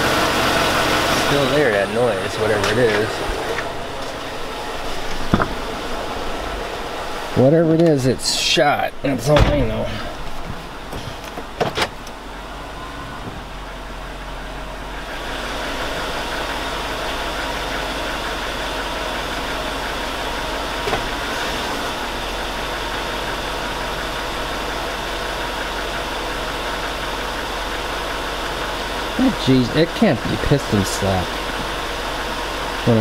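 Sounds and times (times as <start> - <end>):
car engine idling with knocking: 0.0 - 33.0
person speaking: 29.2 - 31.4.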